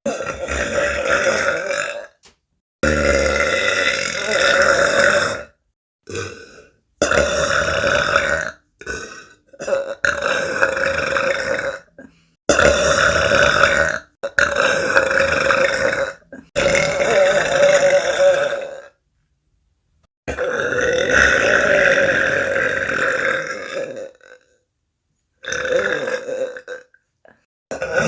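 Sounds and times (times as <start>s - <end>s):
women burping: 0.0s - 2.2s, 2.8s - 18.9s, 25.4s - 28.0s.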